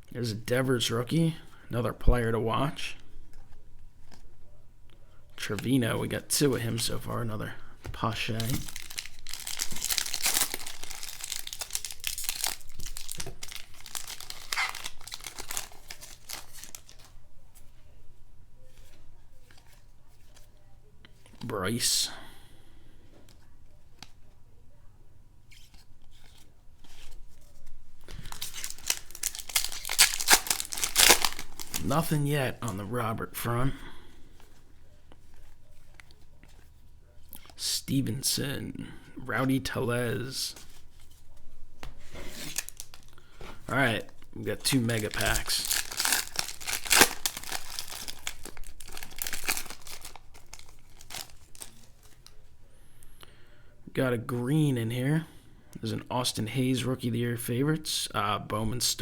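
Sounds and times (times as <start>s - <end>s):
faint clicks of handling cards: 3.0s - 5.8s, 18.6s - 21.5s, 23.0s - 24.4s, 34.1s - 37.6s
foil wrapper tearing and crinkling: 8.3s - 17.0s, 28.1s - 32.1s, 42.3s - 43.2s, 44.6s - 52.3s.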